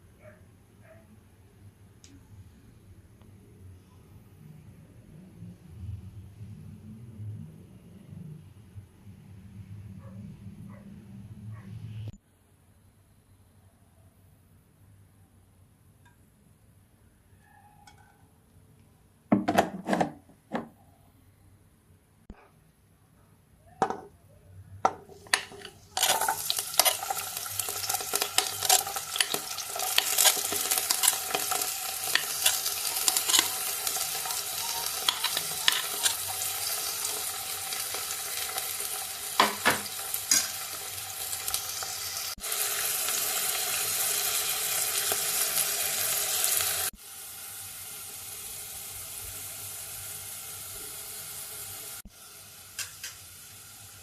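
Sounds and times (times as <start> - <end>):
utensil scraping and knocking: 19.3 - 20.7, 24.9 - 27.2
food sizzling in hot oil: 24.9 - 54.0.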